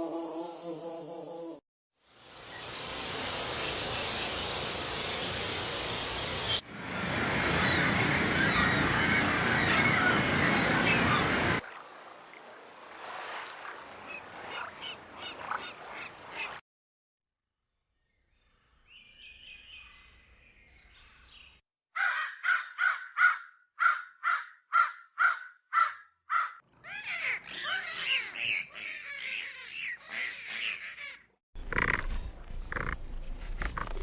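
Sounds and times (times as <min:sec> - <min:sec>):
chorus of birds calling: 0:07.2 - 0:11.6, 0:22.0 - 0:31.3
harsh bird calls: 0:07.4 - 0:11.6, 0:22.0 - 0:33.0
animal sound: 0:22.0 - 0:34.0.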